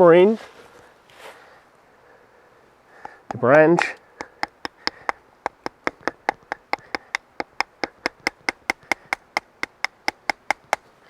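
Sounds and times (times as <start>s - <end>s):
rapid light hammer taps: 3.0s - 10.9s.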